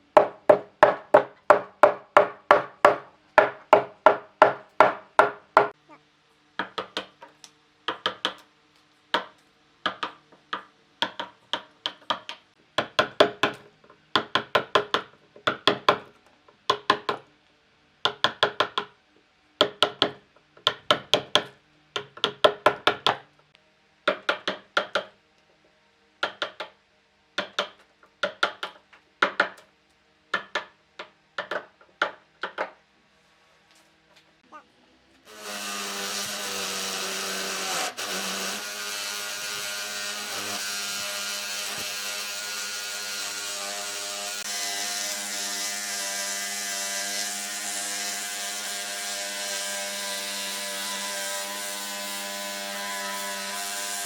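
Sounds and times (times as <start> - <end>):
tools knocking on wood: 0.2 - 5.7, 6.6 - 8.4, 9.1 - 17.2, 30.3 - 32.8.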